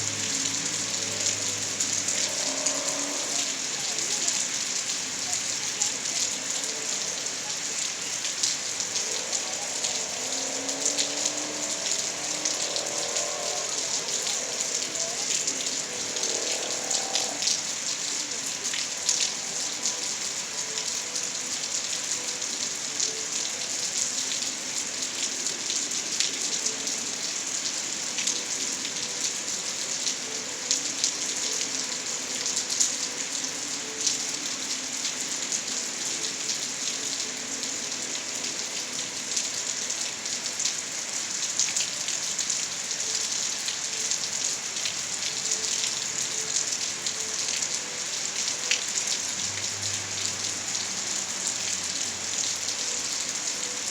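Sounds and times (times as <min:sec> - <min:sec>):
rain hiss: 0:00.0 - 0:53.9
raindrops ticking on hard surface: 0:00.0 - 0:53.9.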